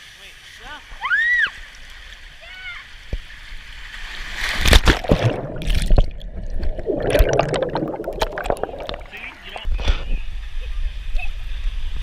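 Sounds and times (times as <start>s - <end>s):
water splashing and sloshing: 1.5s - 9.9s.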